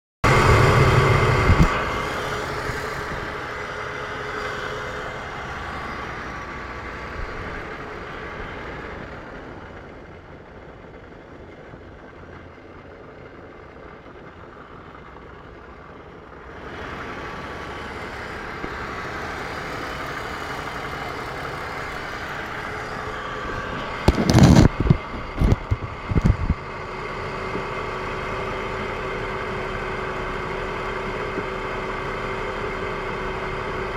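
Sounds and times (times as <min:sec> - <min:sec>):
loud low engine rumble: 0:00.2 - 0:33.9
loud short engine knocks: 0:00.3 - 0:03.3
mechanical hum with whine: 0:00.3 - 0:09.9.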